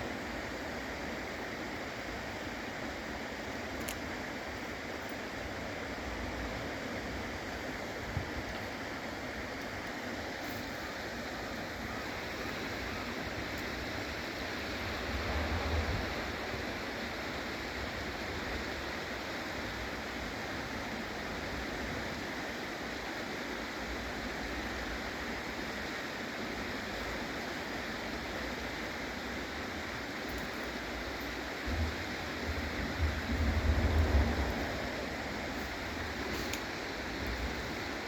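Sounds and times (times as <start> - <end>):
river water flowing: 0.0 - 38.0
low rumble: 32.5 - 36.3.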